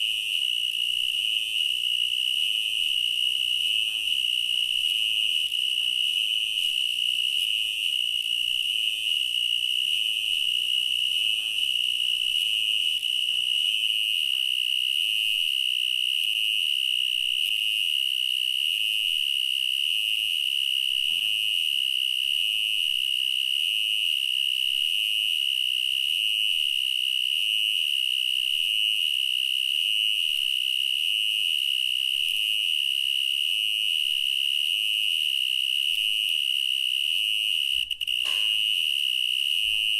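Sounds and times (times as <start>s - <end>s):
cricket trilling: 34.0s - 39.9s.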